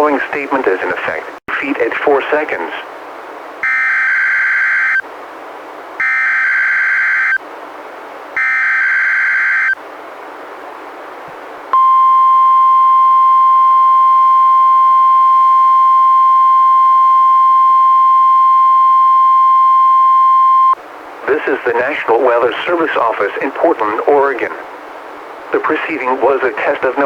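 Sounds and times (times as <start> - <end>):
receiver hiss: 0.0 - 5.2, 8.2 - 27.0
steady warning alarm tone: 3.6 - 5.0, 6.0 - 7.4, 8.4 - 9.8, 11.8 - 20.8.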